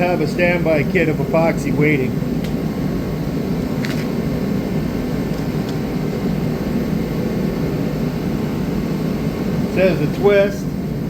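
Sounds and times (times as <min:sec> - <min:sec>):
fan whirring: 0:00.0 - 0:11.0.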